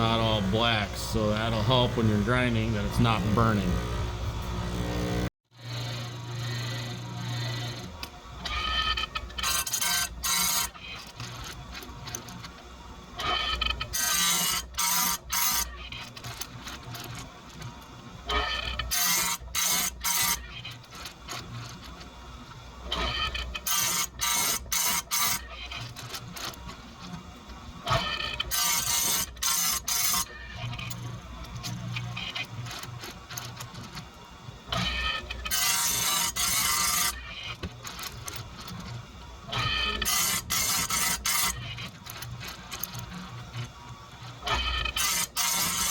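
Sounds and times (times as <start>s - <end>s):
grinder motor running: 0.0s - 10.6s
grinding wheel on chain teeth: 0.0s - 12.4s, 13.2s - 17.3s, 18.3s - 21.9s, 27.8s - 31.0s, 34.7s - 38.7s, 39.5s - 43.4s, 44.4s - 45.9s.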